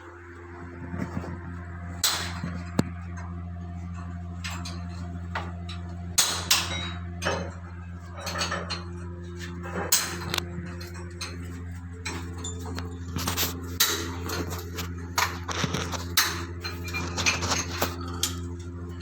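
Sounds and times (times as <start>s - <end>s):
low machinery hum: 0.0s - 19.0s
metal tools clinking and knocking: 6.4s - 19.0s.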